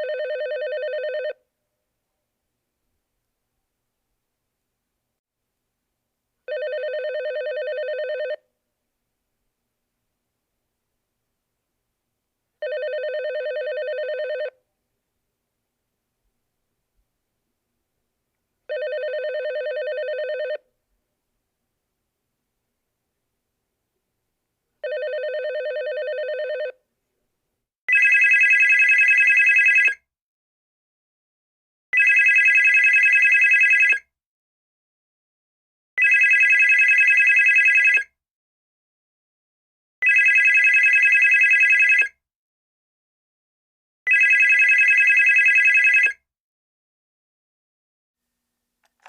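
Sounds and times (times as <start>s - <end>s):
phone ringing with fast trill: 6.5s - 8.4s, 12.6s - 14.5s, 18.7s - 20.6s
low-pitched phone ring: 12.6s - 14.5s.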